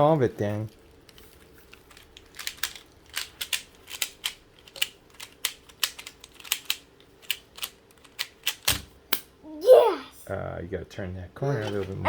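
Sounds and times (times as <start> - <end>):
puzzle cube layers clicking: 1.8 - 8.7.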